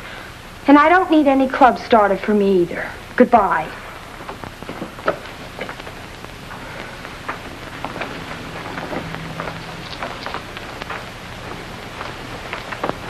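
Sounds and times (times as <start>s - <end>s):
old film soundtrack hiss: 0.0s - 13.0s
small clicks and pops: 4.2s - 13.0s.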